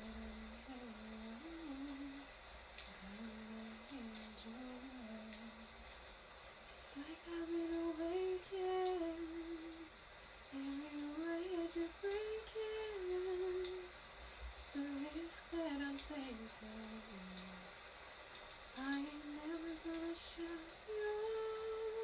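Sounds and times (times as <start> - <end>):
woman humming: 0.0 - 2.2, 3.0 - 5.6, 6.9 - 9.9, 10.6 - 13.9, 18.8 - 22.0.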